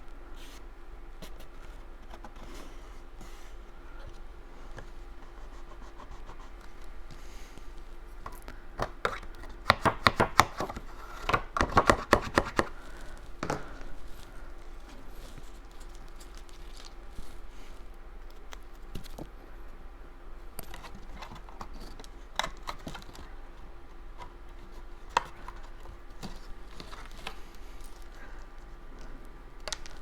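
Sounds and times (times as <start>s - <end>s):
faint steady hum: 0.0s - 30.0s.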